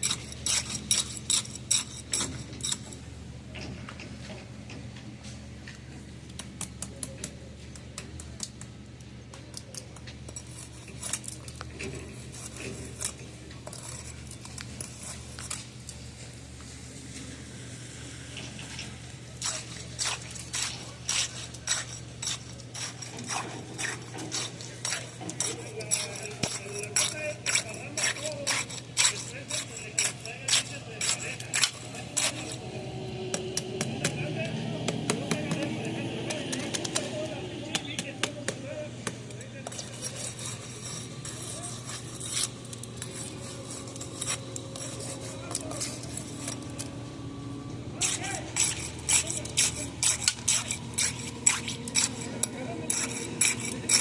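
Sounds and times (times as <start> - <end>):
tools scraping wet concrete: 0.0 - 4.4, 6.3 - 17.2, 18.3 - 54.0
steady low hum: 7.4 - 54.0
low engine hum: 31.8 - 38.0.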